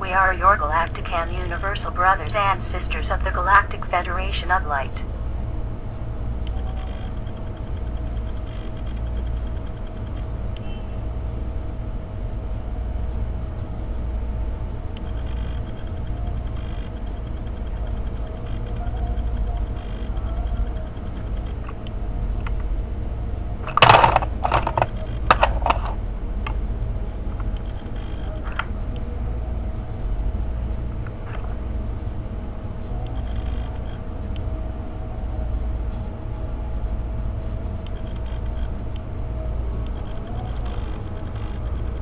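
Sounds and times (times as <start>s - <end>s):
faint steady tone: 0.0s - 42.0s
spinning toy humming: 6.4s - 10.4s, 14.9s - 22.6s, 23.5s - 26.0s, 31.8s - 42.0s.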